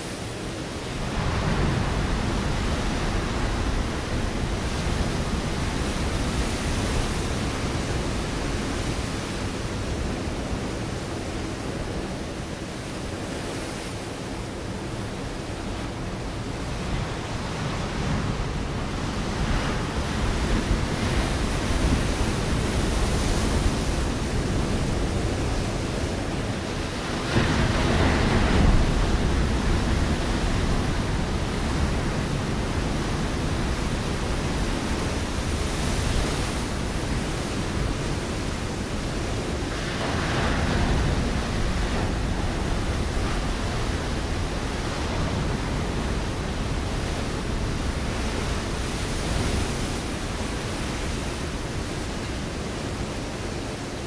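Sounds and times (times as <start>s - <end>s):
waves breaking on rocky shore: 0.0s - 54.0s
wave crashing: 17.2s - 54.0s.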